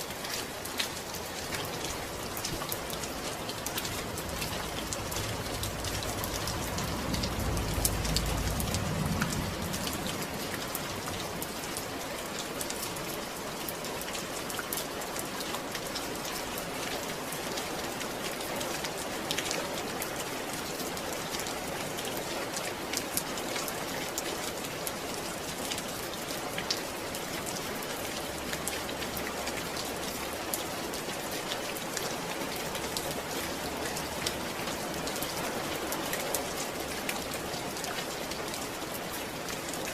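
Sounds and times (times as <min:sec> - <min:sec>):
rain falling: 0:00.0 - 0:39.9
low rumble: 0:03.9 - 0:11.4.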